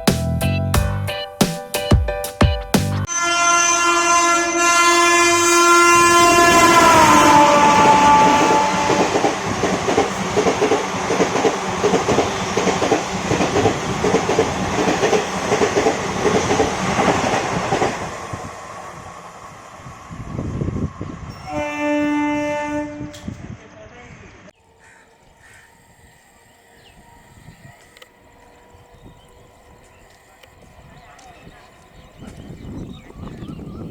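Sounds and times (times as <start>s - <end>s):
train horn: 3.1s - 14.0s, 21.3s - 24.3s
train wheels clattering over rails: 6.7s - 18.7s.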